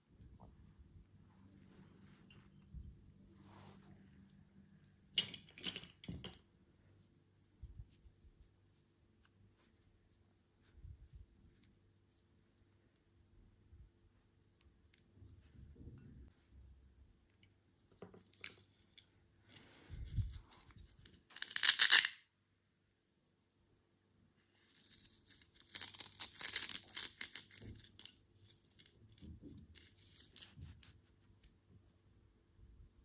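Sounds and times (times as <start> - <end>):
soft handling sounds: 0.0 - 22.0, 24.3 - 32.4
packaging crinkling and tearing: 24.8 - 28.7.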